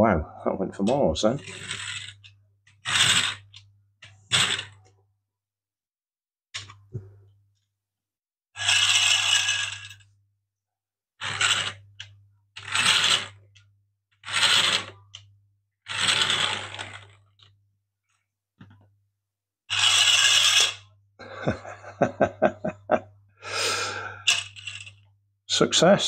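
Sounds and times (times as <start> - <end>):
plastic scraping and rattling: 15.9 - 17.5.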